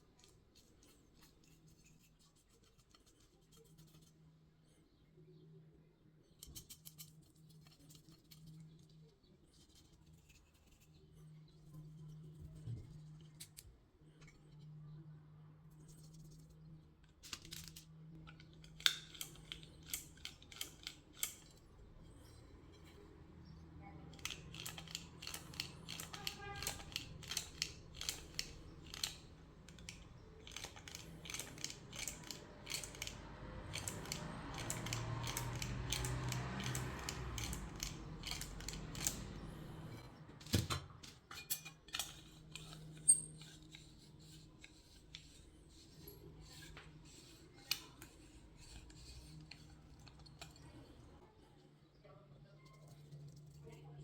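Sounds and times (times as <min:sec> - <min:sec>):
metal lock parts clicking and rattling: 0:17.0 - 0:23.0, 0:24.0 - 0:44.0, 0:46.0 - 0:51.2.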